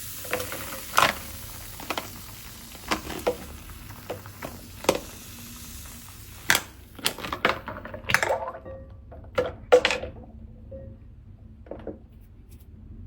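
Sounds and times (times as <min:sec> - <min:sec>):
steady fizzing hiss: 0:00.0 - 0:08.3.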